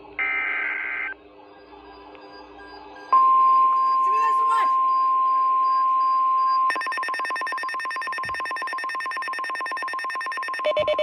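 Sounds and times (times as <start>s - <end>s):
harsh electronic alarm beeping: 3.2s - 11.0s.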